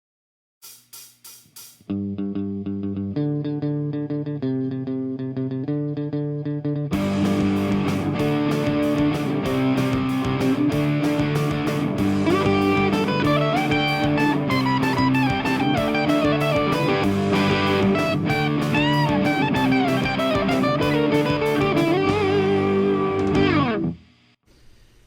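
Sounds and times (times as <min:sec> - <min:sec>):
steady drum beat: 0:00.6 - 0:01.9, 0:07.0 - 0:23.7
rhythm guitar: 0:00.7 - 0:24.1
electric guitar lead: 0:02.1 - 0:24.1.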